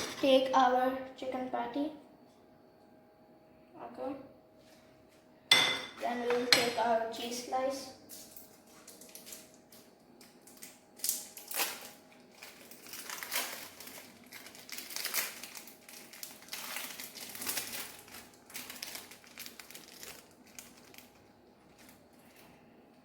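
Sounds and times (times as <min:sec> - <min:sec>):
plastic wrapper crinkling: 0:08.1 - 0:22.5.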